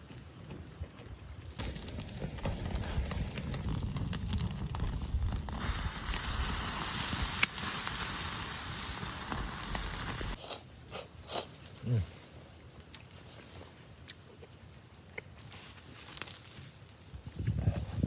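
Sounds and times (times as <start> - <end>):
campfire crackling: 0.0 - 18.0
sharp pops from fire: 1.4 - 10.4, 16.0 - 17.4.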